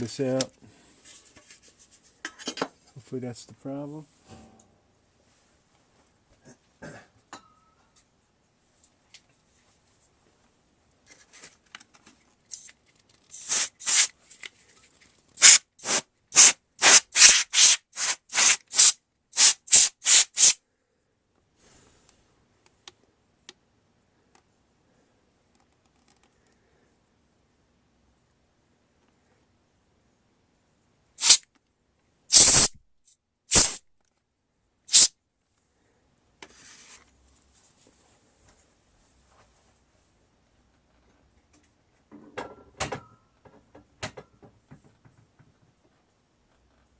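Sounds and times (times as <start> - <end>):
short hissing air blasts: 13.3 - 14.1, 15.4 - 20.6, 31.2 - 31.4, 32.3 - 32.8, 33.5 - 33.8, 34.9 - 35.1
soft air puffs: 13.3 - 20.6, 21.5 - 22.4, 31.2 - 31.4, 32.3 - 32.8, 33.5 - 33.8, 34.9 - 35.1.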